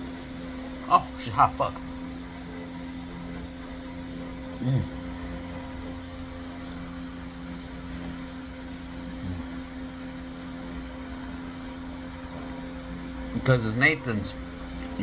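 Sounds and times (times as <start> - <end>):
appliance low hum: 0.0 - 15.0
man's muffled voice sounds: 0.8 - 1.8, 4.1 - 5.1, 9.2 - 9.5.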